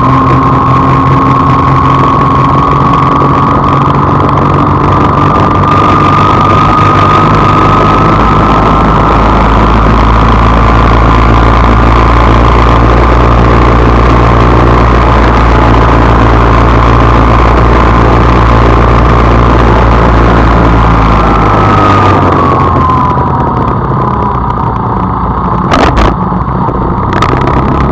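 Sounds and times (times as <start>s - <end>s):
steady high whine: 0.0s - 27.9s
vehicle engine droning: 0.0s - 27.9s.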